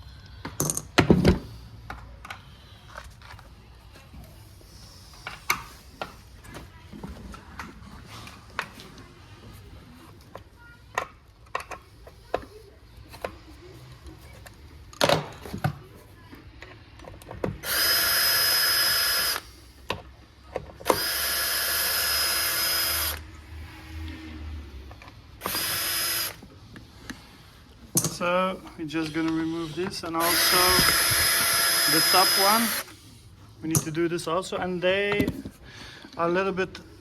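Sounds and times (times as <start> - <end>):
cordless drill whining: 17.6 - 19.5, 20.8 - 23.2, 25.4 - 26.4, 30.1 - 33.0.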